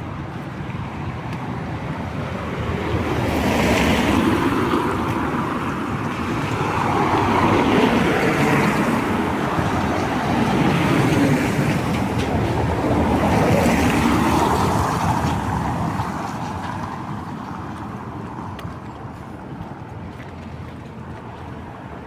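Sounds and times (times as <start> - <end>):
tyres hissing on wet road: 2.2 - 18.2.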